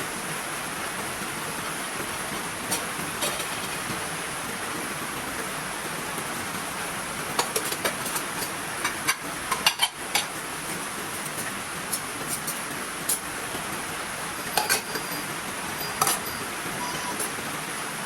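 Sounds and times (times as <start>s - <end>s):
heavy rain: 0.0s - 18.0s.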